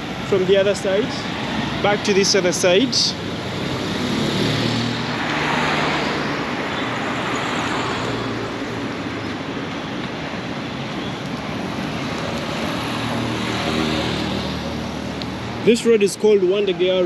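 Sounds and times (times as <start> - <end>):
road traffic passing: 0.0 - 17.0
vehicle passing close by: 1.0 - 9.0.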